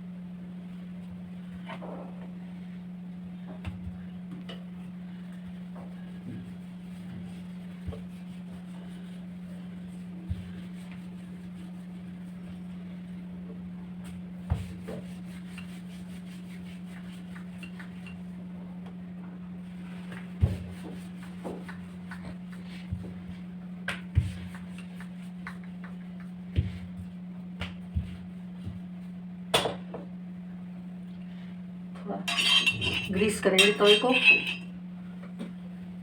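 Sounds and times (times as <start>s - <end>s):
steady low hum: 0.0s - 36.0s
utensils and dishes clinking: 32.3s - 34.7s.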